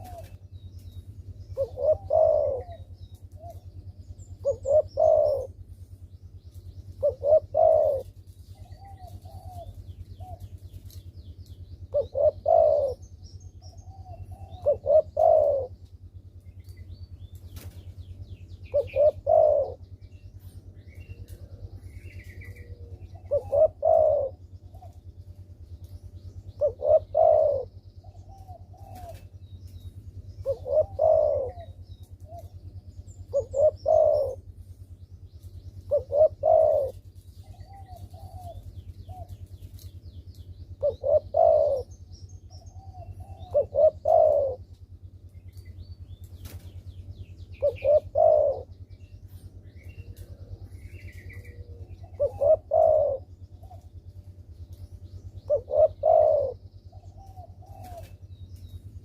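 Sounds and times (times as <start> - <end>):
dove cooing: 0.0 - 16.3, 17.2 - 59.0
steady low hum: 0.0 - 59.0.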